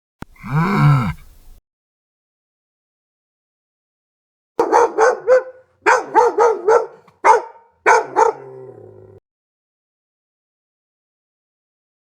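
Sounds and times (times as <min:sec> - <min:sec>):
dog barking: 0:04.6 - 0:09.2.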